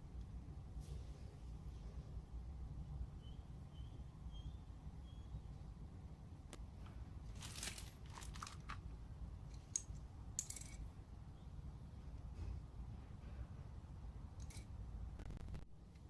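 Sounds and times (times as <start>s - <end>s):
low steady hum: 0.0s - 16.0s
crinkly packaging rustles: 7.2s - 8.9s.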